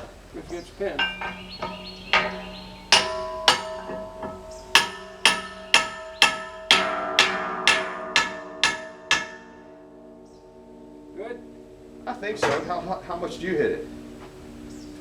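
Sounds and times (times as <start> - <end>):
steel saw blade ringing: 1.0 - 11.4.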